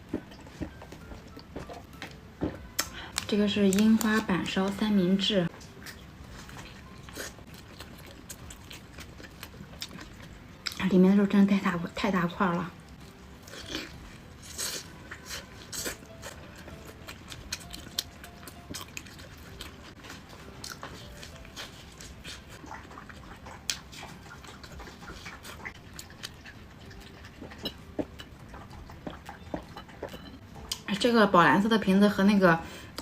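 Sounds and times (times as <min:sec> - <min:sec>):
person chewing with wet smacks: 0:05.5 - 0:10.8, 0:13.4 - 0:30.9.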